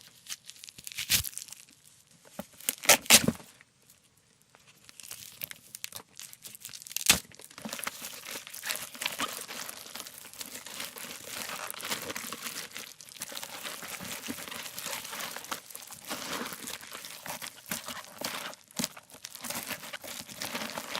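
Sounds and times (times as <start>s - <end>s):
pumpkin crunching and tearing: 0.0s - 1.8s, 2.6s - 3.4s, 4.8s - 20.9s
sharp crack: 7.0s - 7.3s.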